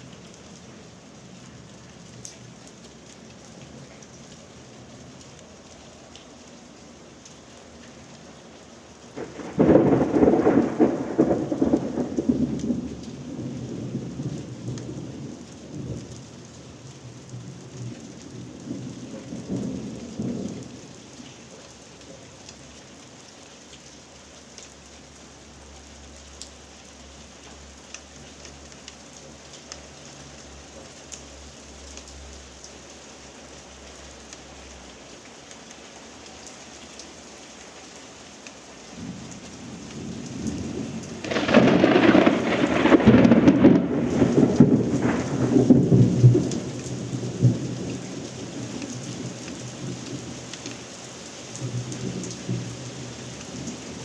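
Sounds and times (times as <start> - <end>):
steady rain: 0.0 - 54.0
thunder rumbling: 9.1 - 16.1, 39.0 - 50.3.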